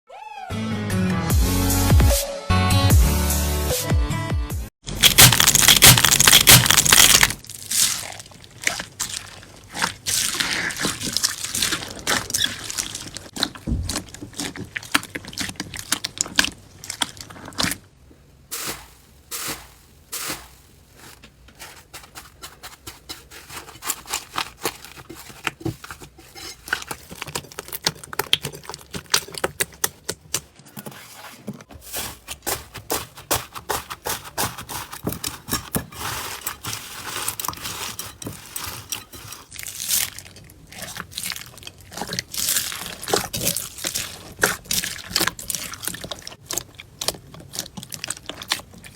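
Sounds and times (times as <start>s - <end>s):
slime crackling and popping: 4.9s - 17.8s, 38.9s - 48.9s.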